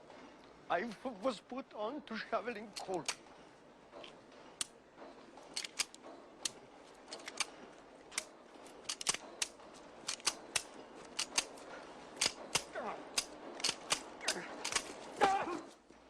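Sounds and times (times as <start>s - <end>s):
faint steady background noise: 0.0s - 16.0s
metal machinery clicking: 5.4s - 15.0s.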